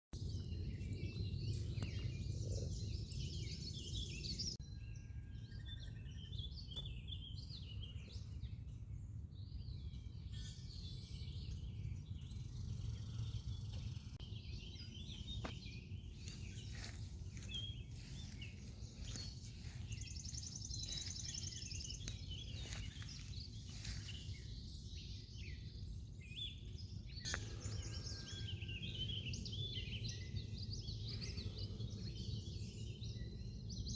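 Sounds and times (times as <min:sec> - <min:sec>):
songbirds chirping and trilling: 0:00.2 - 0:33.9
low outdoor rumble: 0:12.1 - 0:33.9.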